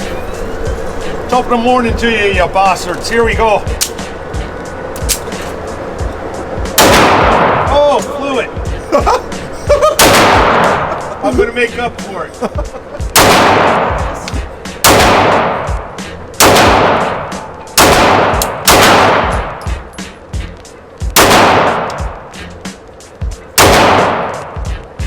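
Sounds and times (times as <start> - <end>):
pistol shots with echo: 6.7 - 7.7, 10.0 - 11.0, 13.1 - 14.1, 14.8 - 19.7, 21.2 - 22.2, 23.6 - 24.6.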